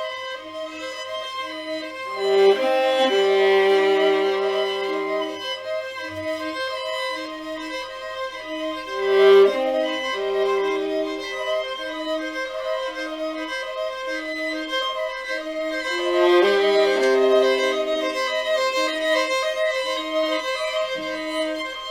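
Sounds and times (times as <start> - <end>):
bowed string music: 0.0 - 21.9.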